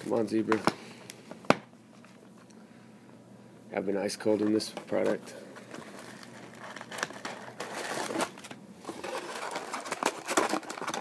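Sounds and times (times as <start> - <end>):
cards rustling and clicking: 4.2 - 11.0
foil wrapper crinkling: 4.5 - 11.0.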